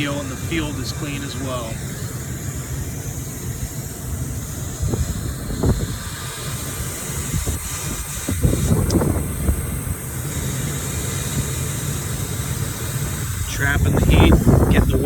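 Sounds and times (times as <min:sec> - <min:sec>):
steady hiss: 0:00.0 - 0:15.0
wind buffeting microphone: 0:03.2 - 0:10.1, 0:13.2 - 0:15.0.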